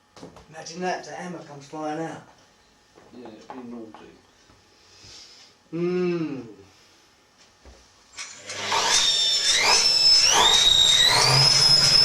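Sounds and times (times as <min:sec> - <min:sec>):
washing machine motor whining: 0:08.1 - 0:12.0.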